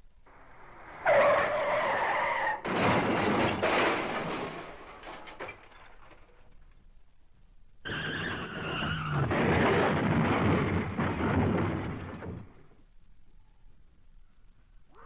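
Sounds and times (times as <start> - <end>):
noisy crash: 0.3 - 6.6, 7.9 - 12.8
tyre screech: 0.4 - 3.4, 7.9 - 9.8.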